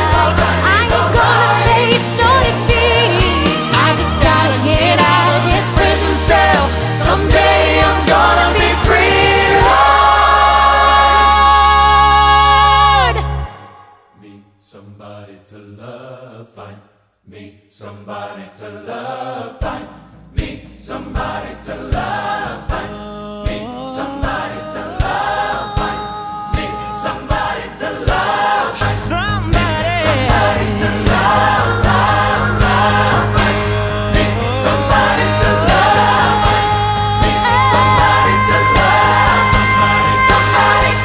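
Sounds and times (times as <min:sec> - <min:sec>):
beat and bass: 0:00.0 - 0:13.5, 0:28.1 - 0:41.0
choir-like singing: 0:00.0 - 0:29.1, 0:30.0 - 0:41.0.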